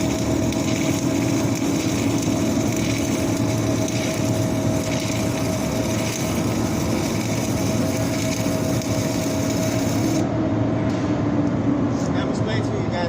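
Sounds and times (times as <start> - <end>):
welding arc crackling: 0.0 - 10.3
welding machine hum: 0.0 - 10.6.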